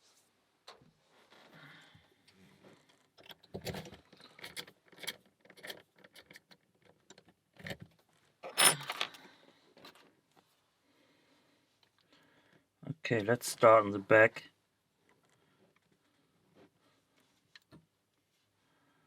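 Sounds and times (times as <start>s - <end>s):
small metal clicks and rattles: 2.9s - 10.1s.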